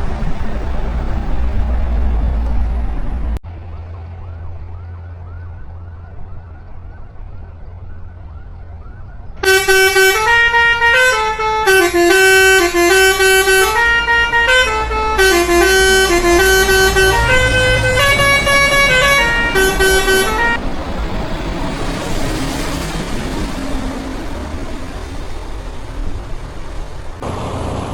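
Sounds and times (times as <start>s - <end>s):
road and engine noise: 0.0s - 27.9s
truck musical horn tune: 9.4s - 20.6s.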